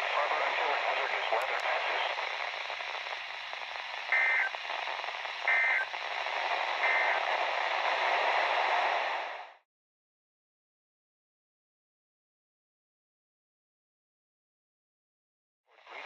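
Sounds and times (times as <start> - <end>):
radio static hiss: 0.0 - 9.6, 15.8 - 16.0
warbling two-tone data bursts: 5.5 - 5.9.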